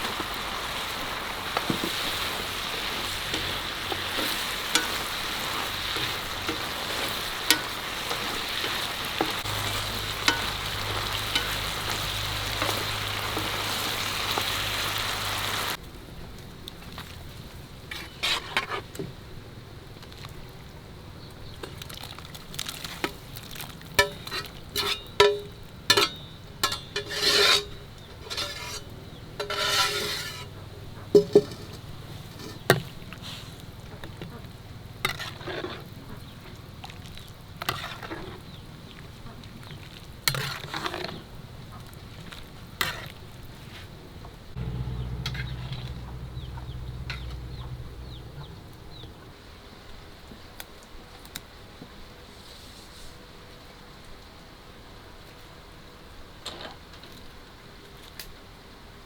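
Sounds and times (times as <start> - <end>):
utensils clinking against cookware: 1.7 - 14.8, 24.0 - 32.8.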